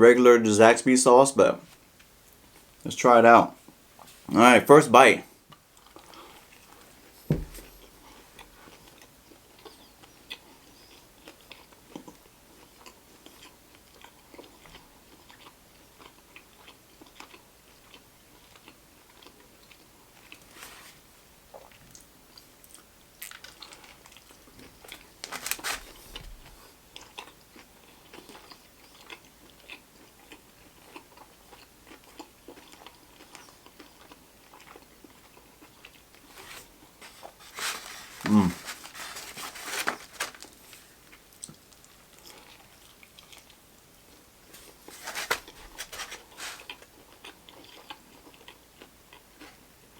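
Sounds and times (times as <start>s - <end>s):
crunchy chewing: 5.5s - 20.7s, 21.6s - 49.6s
person biting sandwich: 36.2s - 42.6s, 44.5s - 46.9s.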